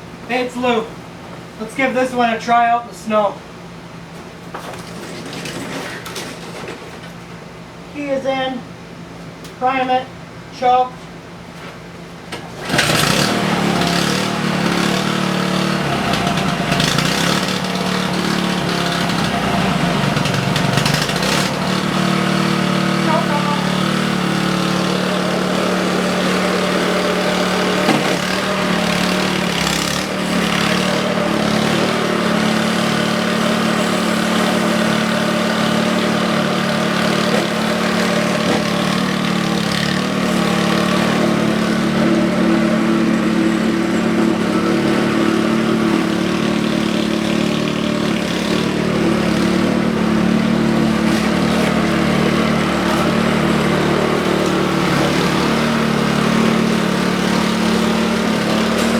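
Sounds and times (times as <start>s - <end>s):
snowblower engine running: 12.4s - 58.9s.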